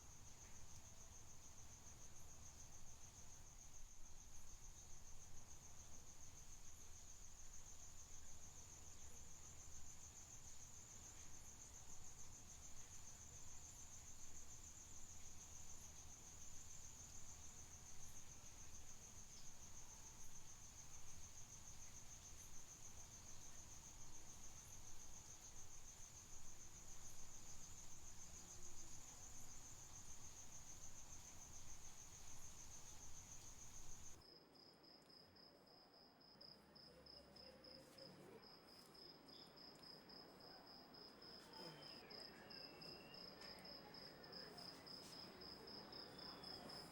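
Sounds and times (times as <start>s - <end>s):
low hum and hiss: 0.0s - 34.3s
crickets trilling: 0.0s - 35.5s, 36.4s - 46.9s
cricket chirping in slow pulse: 0.0s - 46.9s.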